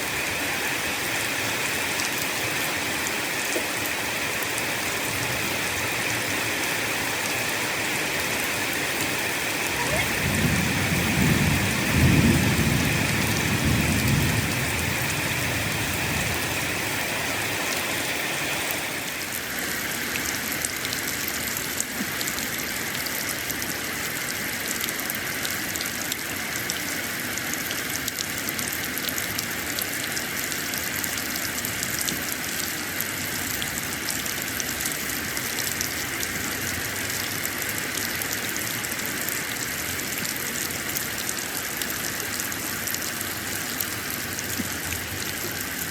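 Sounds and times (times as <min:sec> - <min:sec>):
rain falling: 0:00.0 - 0:45.9
thunder rumble: 0:10.0 - 0:16.5.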